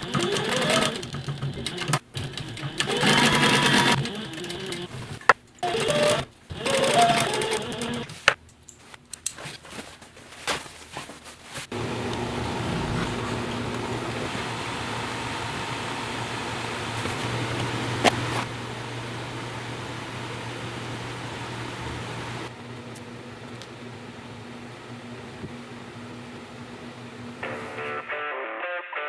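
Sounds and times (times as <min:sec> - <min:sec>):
machine whirring and humming: 0:00.0 - 0:08.4, 0:11.7 - 0:27.8.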